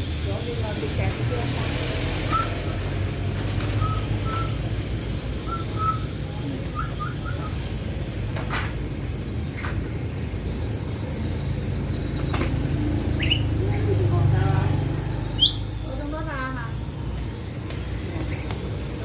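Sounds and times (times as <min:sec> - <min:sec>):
bird chirping softly: 0:13.1 - 0:13.6, 0:15.2 - 0:15.8.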